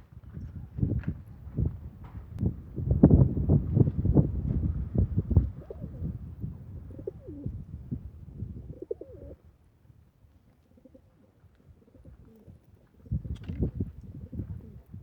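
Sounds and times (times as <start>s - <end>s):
pigeons cooing: 5.4s - 7.7s, 8.6s - 9.4s.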